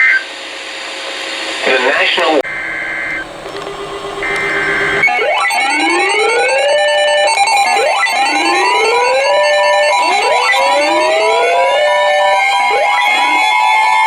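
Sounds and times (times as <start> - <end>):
electronic data tones: 2.4 - 5.0
pulsing beeps: 2.4 - 5.0
synthesized siren rising in pitch: 5.6 - 14.0.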